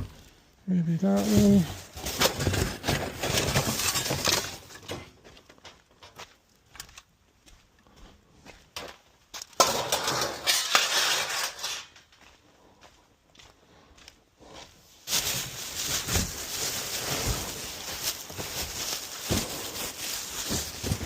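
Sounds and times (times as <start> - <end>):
scrap metal clattering: 1.4 - 5.1, 9.6 - 12.0.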